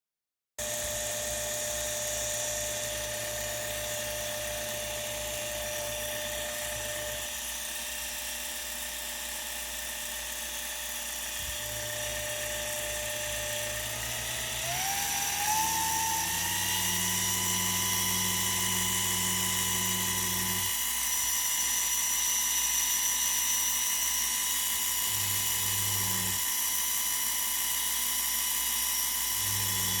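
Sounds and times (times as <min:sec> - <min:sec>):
small electric motor whining: 0:00.6 - 0:30.0.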